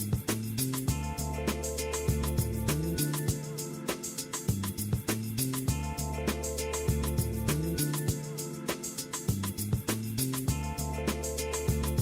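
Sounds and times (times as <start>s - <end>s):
background music with steady beat: 0.0s - 12.0s.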